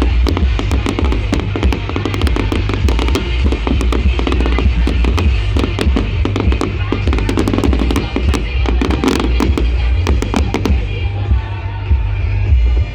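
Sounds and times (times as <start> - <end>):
fireworks crackling and banging: 0.0 - 11.2
loud music with pulsing bass: 0.0 - 12.9.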